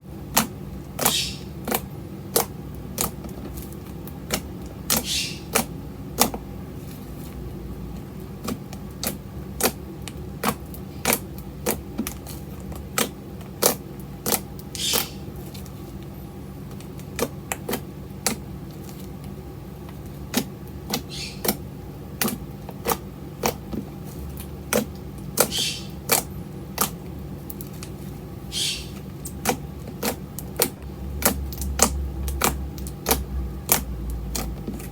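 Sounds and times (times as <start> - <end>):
steady low hum: 0.0 - 34.9
slime crackling squelches: 22.2 - 34.9.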